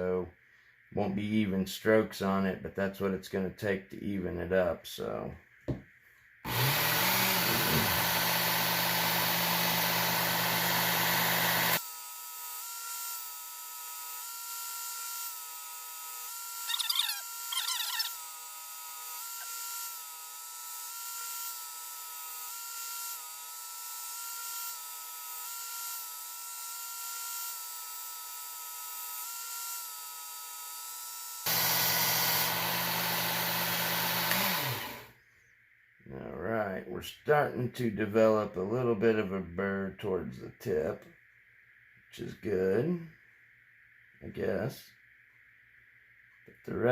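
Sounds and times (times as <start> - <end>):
belt sharpener grinding knife: 6.5 - 12.0, 16.1 - 18.3, 31.4 - 35.0
sharpener whine: 6.5 - 35.2.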